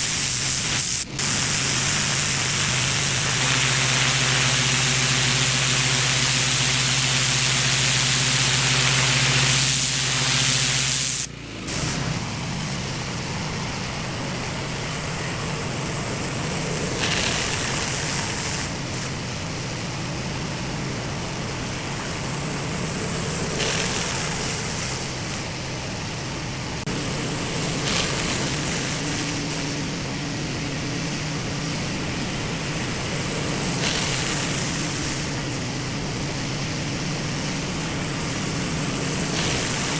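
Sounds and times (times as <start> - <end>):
high-pressure water spraying concrete: 0.0 - 39.9
pressure washer engine: 0.0 - 39.9.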